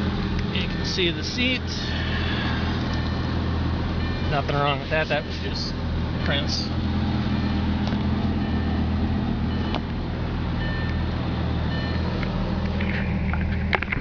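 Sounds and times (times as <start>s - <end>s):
car engine idling: 0.0s - 14.0s
faint high beep: 8.4s - 8.8s, 10.6s - 11.1s, 11.7s - 12.1s.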